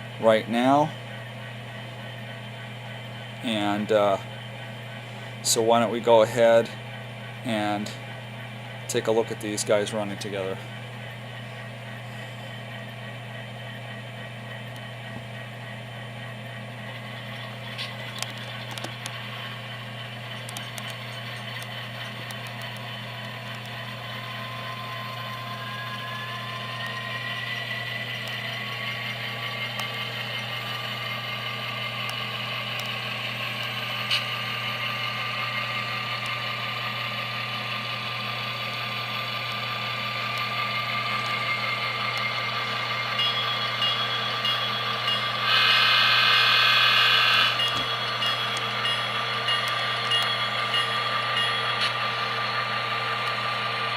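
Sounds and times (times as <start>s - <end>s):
model locomotive diesel engine sounds: 0.0s - 53.9s
rising whine: 16.8s - 53.9s
locomotive horn blast: 45.4s - 47.6s.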